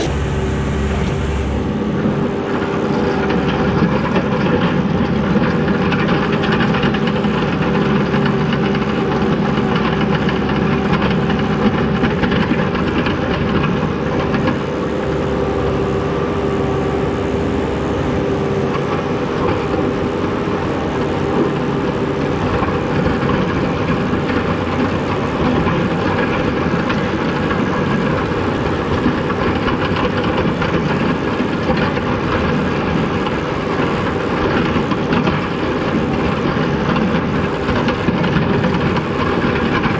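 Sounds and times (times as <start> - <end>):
steady droning tone: 0.0 - 4.5, 14.6 - 25.2
skid steer engine running: 0.0 - 39.9.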